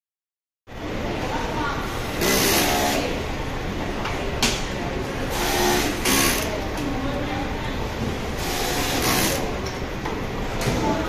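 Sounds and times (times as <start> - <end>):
workers' voices: 0.8 - 11.0
machine hum: 5.0 - 10.6.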